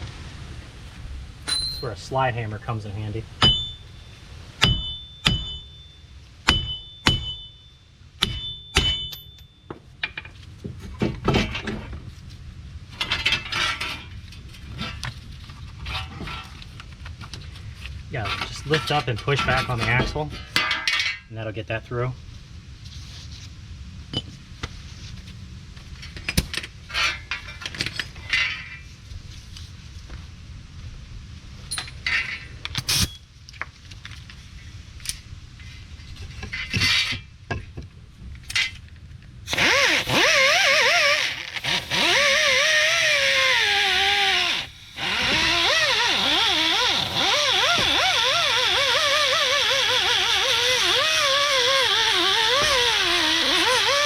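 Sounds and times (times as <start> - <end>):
metal parts and tools clinking: 1.5 - 2.0, 8.2 - 10.4, 31.7 - 33.2
rotary power tool running: 39.5 - 54.0.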